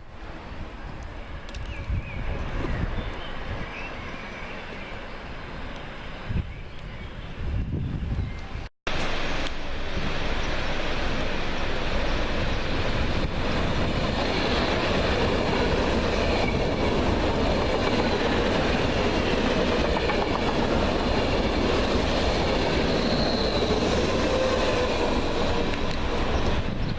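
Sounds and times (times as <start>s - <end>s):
train wheels rolling on rails: 8.9s - 26.9s.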